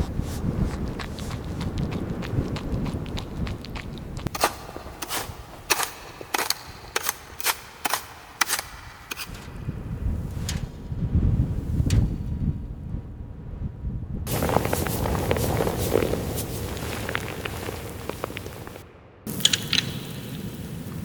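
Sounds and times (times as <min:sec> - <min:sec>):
low rumbling: 0:00.0 - 0:06.9, 0:09.4 - 0:21.0
sharp cracks: 0:00.7 - 0:09.7, 0:14.3 - 0:21.0.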